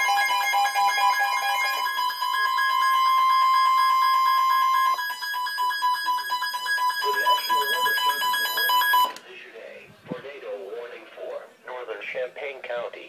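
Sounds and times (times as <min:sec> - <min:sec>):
loud electronic alert tone: 0:00.0 - 0:09.2.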